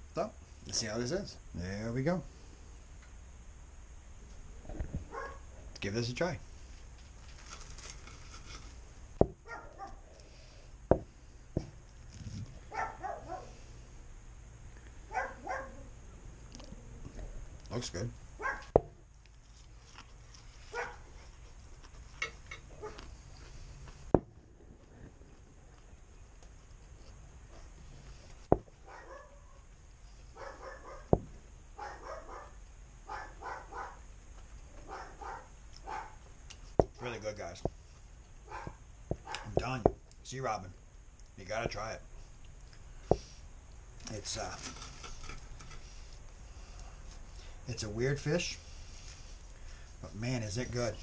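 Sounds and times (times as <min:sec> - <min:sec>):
dog yipping: 0:05.1 - 0:05.4, 0:09.4 - 0:10.0, 0:12.7 - 0:13.5, 0:15.1 - 0:15.9, 0:18.4 - 0:18.7, 0:20.7 - 0:21.1, 0:28.8 - 0:29.6, 0:30.4 - 0:31.2, 0:31.8 - 0:34.0, 0:34.9 - 0:36.2, 0:38.5 - 0:39.5
sharp knocks: 0:10.9 - 0:11.7, 0:18.7 - 0:19.0, 0:36.8 - 0:37.0.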